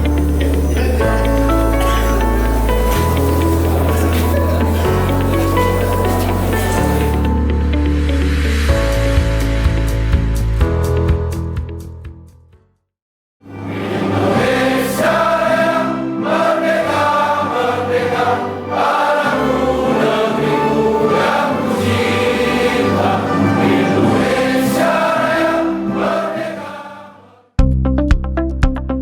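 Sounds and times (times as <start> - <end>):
choir singing: 0.0 - 7.4, 13.5 - 27.6
musical accompaniment: 0.0 - 12.1, 13.5 - 26.8.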